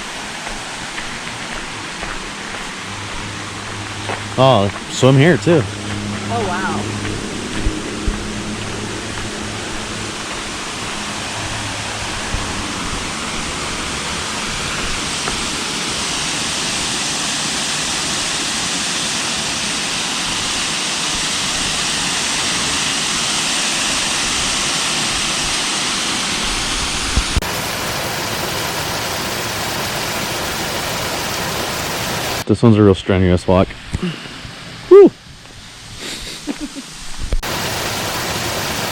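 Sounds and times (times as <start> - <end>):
waterfall rushing: 0.0 - 32.4, 36.4 - 38.9.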